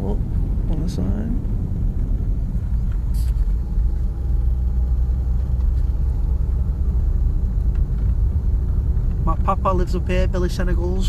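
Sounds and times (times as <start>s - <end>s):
car engine and tyres rumbling: 0.0s - 11.0s.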